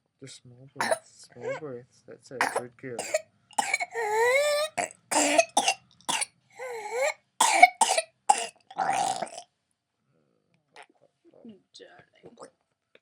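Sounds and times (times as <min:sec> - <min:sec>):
toddler coughing: 0:00.8 - 0:01.6, 0:02.4 - 0:09.3
whooping gasps: 0:01.4 - 0:01.6, 0:03.8 - 0:04.9, 0:06.6 - 0:07.1.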